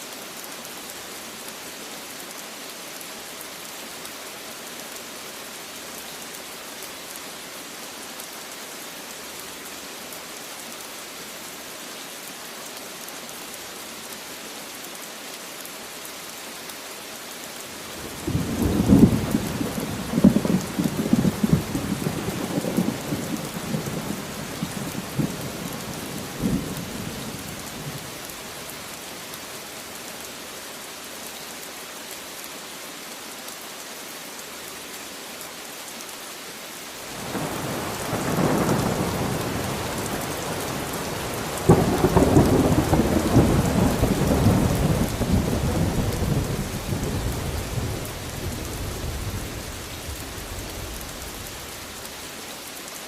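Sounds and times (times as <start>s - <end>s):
steady rain falling: 0.0s - 53.0s
thunder rumbling: 18.1s - 23.2s.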